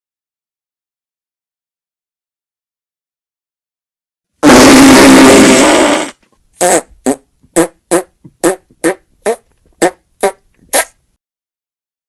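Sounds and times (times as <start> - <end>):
long loud fart sound: 4.4 - 11.0
short pitched fart sounds: 4.4 - 11.0.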